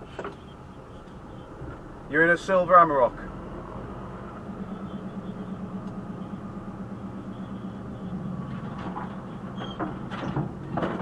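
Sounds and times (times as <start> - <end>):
lorry diesel engine running: 0.0 - 11.0.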